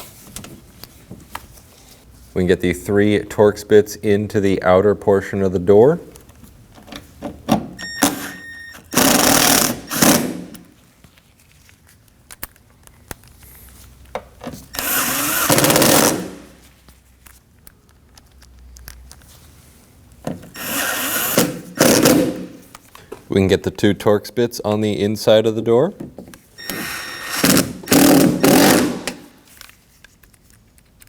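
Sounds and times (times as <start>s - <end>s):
power driver running: 7.8s - 10.6s, 14.8s - 16.5s, 20.6s - 22.6s, 26.6s - 29.3s.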